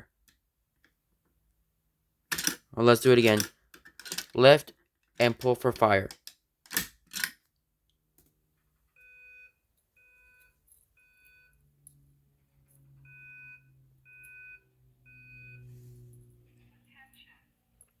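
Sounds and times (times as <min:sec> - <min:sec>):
sharp clicks: 0:02.3 - 0:07.3
fire alarm beeps: 0:09.0 - 0:11.6, 0:13.0 - 0:15.7.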